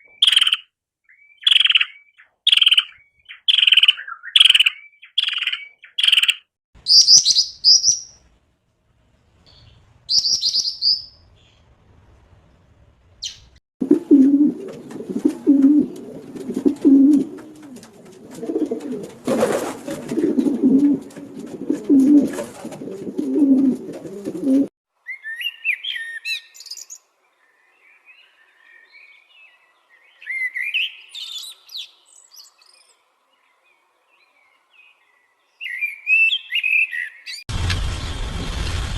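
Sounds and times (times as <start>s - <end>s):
songbird calls: 0.0s - 8.2s, 9.5s - 11.7s, 20.1s - 37.4s
birds chirping: 0.0s - 8.3s, 9.1s - 37.4s
dove cooing: 13.8s - 24.7s.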